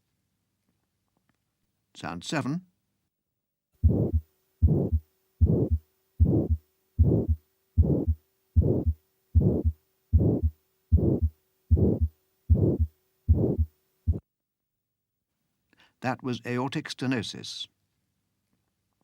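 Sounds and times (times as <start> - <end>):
heartbeat through stethoscope: 3.8 - 14.2.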